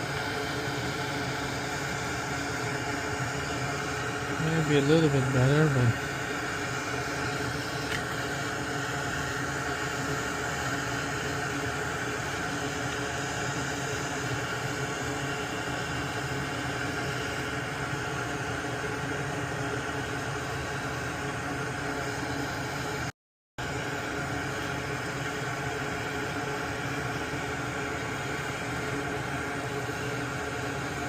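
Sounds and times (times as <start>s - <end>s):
electric fan motor whirring: 0.0s - 31.0s.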